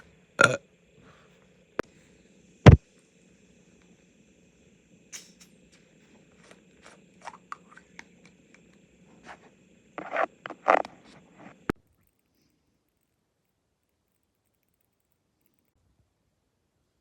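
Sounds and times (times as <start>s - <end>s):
person swallowing drink: 0.4s - 0.6s
small clicks: 11.7s - 15.8s.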